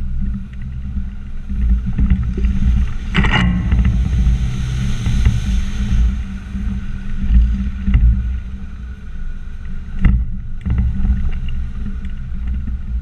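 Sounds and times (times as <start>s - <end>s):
diesel engine running at low revs: 0.0s - 13.0s
loud thump: 3.2s - 6.2s.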